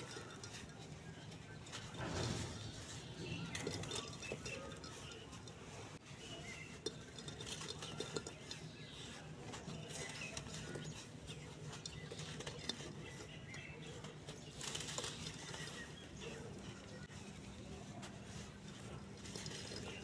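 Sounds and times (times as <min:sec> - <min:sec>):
cement lumps crumbling and crunching: 0:01.5 - 0:06.0.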